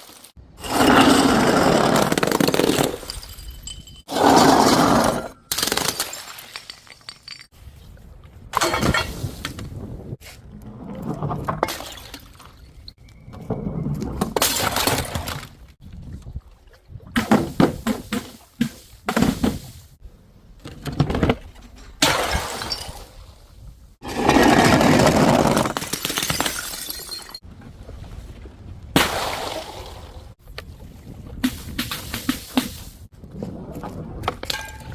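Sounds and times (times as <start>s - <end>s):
glass bottles smashing: 2.3s - 4.7s, 5.5s - 7.6s, 22.0s - 23.1s, 25.3s - 27.4s.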